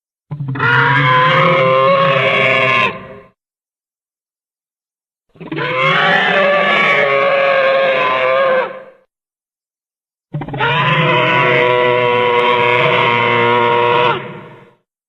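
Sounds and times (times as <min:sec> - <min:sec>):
low creature calls: 0:00.3 - 0:03.4, 0:05.4 - 0:09.0, 0:10.4 - 0:14.8.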